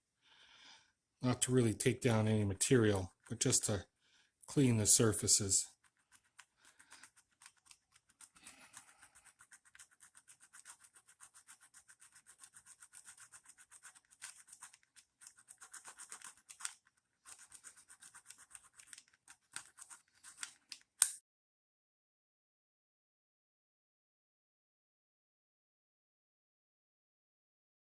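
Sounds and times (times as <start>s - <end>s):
sharp click: 20.7s - 21.2s.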